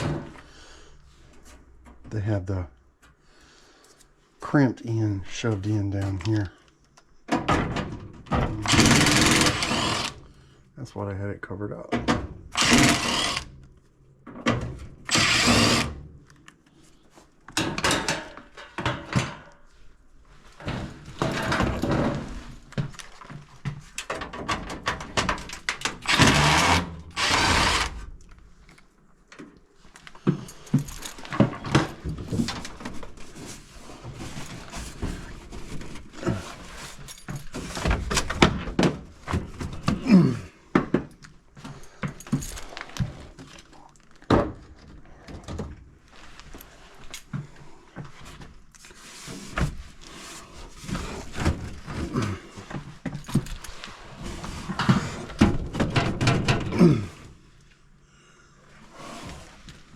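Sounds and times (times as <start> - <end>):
tools and metal parts knocking: 7.4 - 10.1, 17.6 - 19.6.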